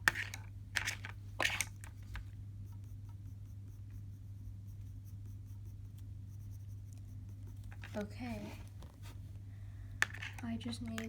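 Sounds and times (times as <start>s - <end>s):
low electrical hum: 0.0s - 11.0s
pencil scratching on paper: 1.4s - 9.4s, 10.1s - 11.0s.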